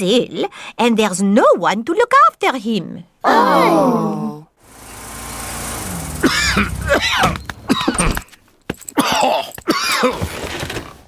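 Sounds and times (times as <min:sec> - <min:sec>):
cartoon voice coughing and groaning: 0:06.2 - 0:08.2, 0:09.0 - 0:10.2.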